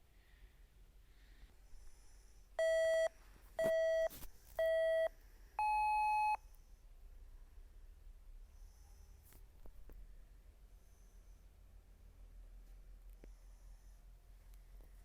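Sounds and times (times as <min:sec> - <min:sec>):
electronic countdown beeps: 0:02.6 - 0:06.4.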